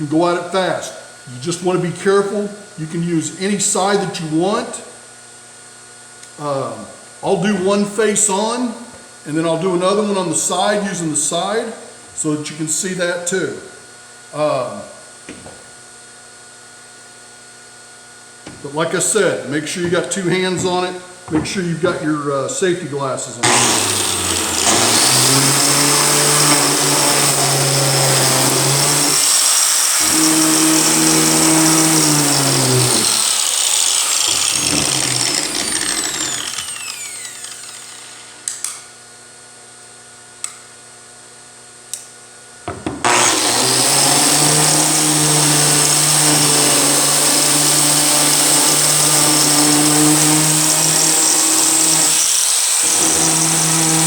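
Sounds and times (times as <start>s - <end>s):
electric grinder running: 23.4s - 38.9s, 43.0s - 54.0s.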